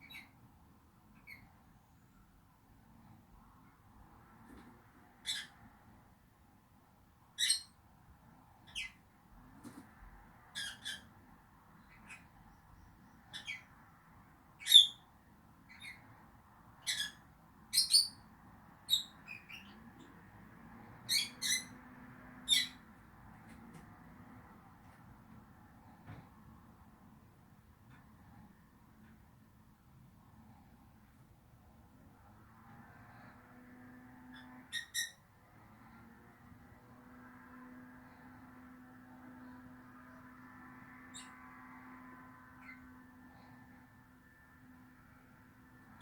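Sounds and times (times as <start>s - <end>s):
lovebirds chirping: 7.4s - 7.7s, 11.8s - 13.8s, 14.6s - 15.0s, 16.8s - 18.2s.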